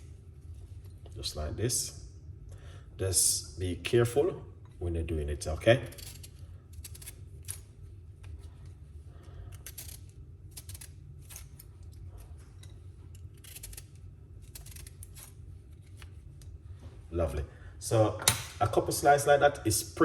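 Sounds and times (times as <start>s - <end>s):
low steady hum: 0.0s - 20.0s
peeler scraping lemon peel: 5.8s - 7.6s, 9.3s - 16.1s.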